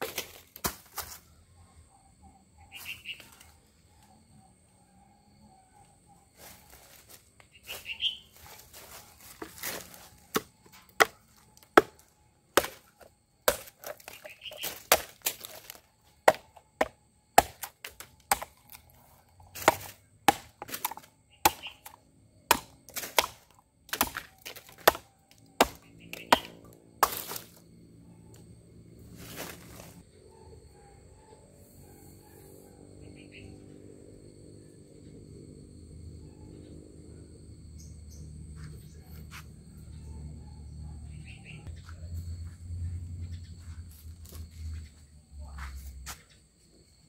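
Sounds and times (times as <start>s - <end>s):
knife chopping wood: 9.4s - 18.8s, 19.5s - 27.5s.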